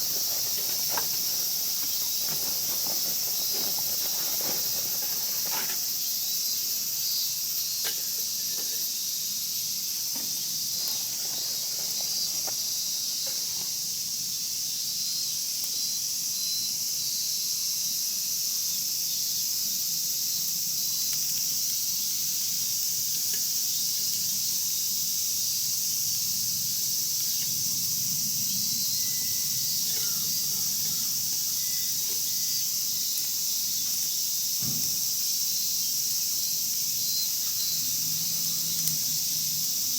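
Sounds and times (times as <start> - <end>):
wood fire crackling and popping: 0.0 - 6.8, 10.0 - 13.8
high-pitched hiss: 0.0 - 39.9.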